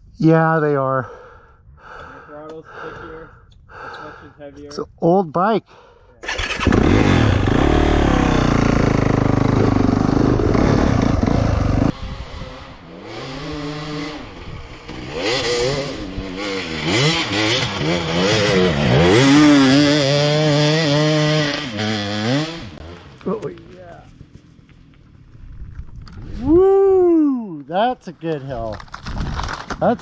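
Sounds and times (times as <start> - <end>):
dirt bike engine revving: 6.2 - 23.3.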